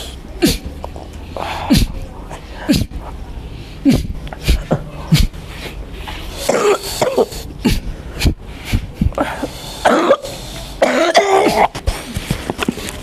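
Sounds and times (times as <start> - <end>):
person coughing: 3.8 - 5.4, 6.4 - 7.9, 9.2 - 11.8.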